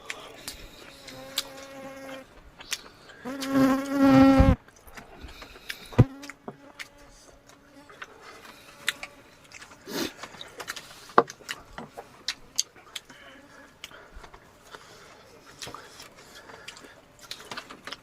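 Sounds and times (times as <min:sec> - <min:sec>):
fly buzzing: 0:01.0 - 0:02.2, 0:03.2 - 0:04.6, 0:05.8 - 0:07.9.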